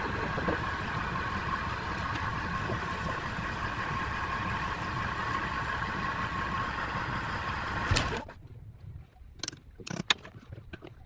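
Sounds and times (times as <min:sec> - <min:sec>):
wood lathe motor hum: 0:00.0 - 0:08.2.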